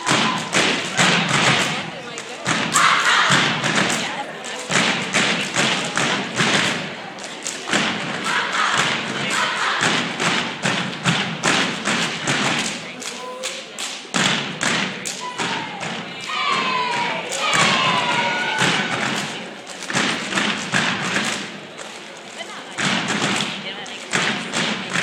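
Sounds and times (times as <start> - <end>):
voices calling out: 0.0 - 10.3, 15.0 - 19.8
hand claps: 0.0 - 25.0
rhythmic stomps: 0.0 - 25.0.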